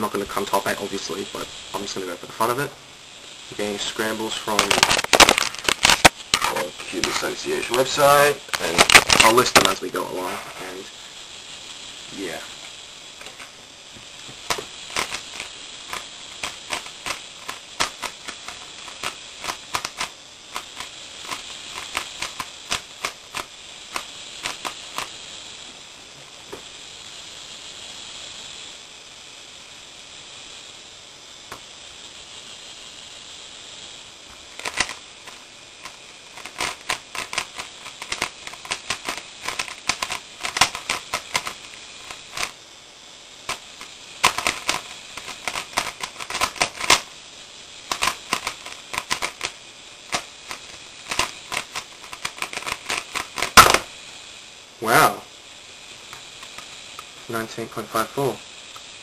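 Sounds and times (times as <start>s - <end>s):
steady hiss: 0.0s - 59.0s
puzzle cube clicking: 14.5s - 25.1s, 34.6s - 42.5s, 44.2s - 47.0s, 47.9s - 49.5s, 50.1s - 53.9s.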